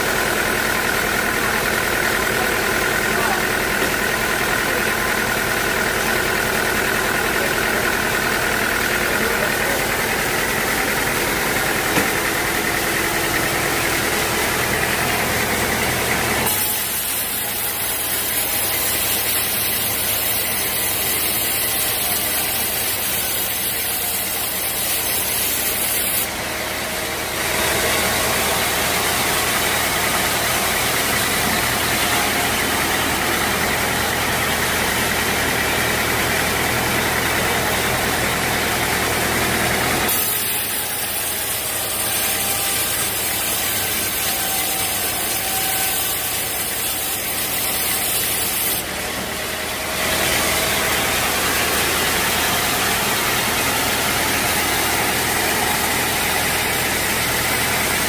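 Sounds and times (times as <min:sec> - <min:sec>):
sawmill machinery running: 0:00.0 - 0:58.0.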